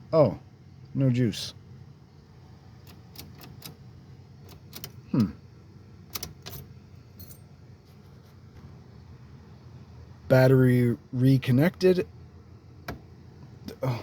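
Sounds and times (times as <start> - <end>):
person grunting: 5.1 - 5.4, 13.7 - 14.0.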